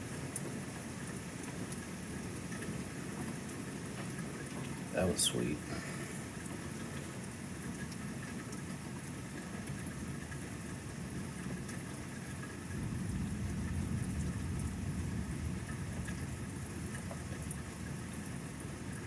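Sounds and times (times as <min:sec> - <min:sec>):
rain falling: 0:00.0 - 0:19.0
thunder rumbling: 0:12.8 - 0:16.9.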